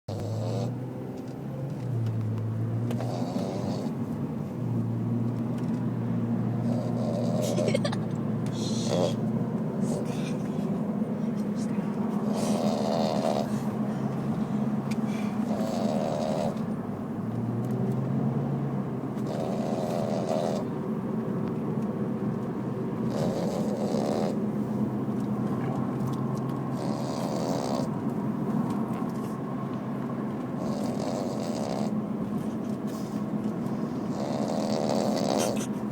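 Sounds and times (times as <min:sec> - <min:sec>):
dog snoring: 0:00.1 - 0:00.8, 0:02.9 - 0:04.0, 0:06.5 - 0:07.9, 0:08.5 - 0:10.4, 0:12.2 - 0:13.8, 0:15.4 - 0:16.8, 0:19.2 - 0:20.7, 0:23.0 - 0:24.4, 0:26.7 - 0:28.0, 0:30.6 - 0:32.0, 0:33.7 - 0:35.9.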